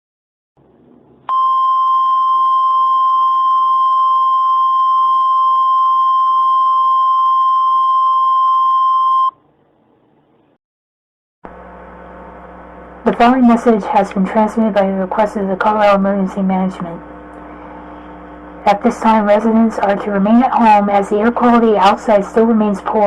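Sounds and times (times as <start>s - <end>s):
faint radio static hiss: 11.5s - 23.0s.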